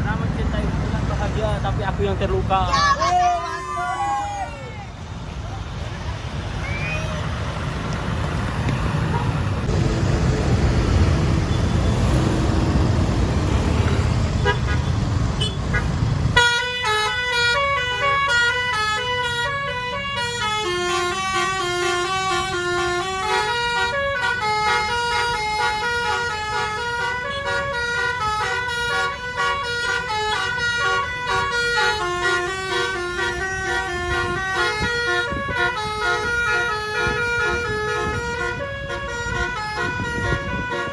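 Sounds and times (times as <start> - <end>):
bus engine and road noise: 0.0 - 40.9
musical bus horn melody: 14.4 - 40.9.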